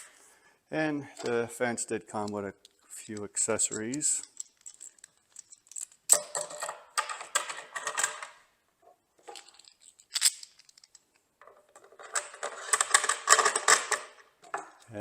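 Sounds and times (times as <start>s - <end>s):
small hard parts clicking and rattling: 2.2s - 8.4s, 9.2s - 14.9s.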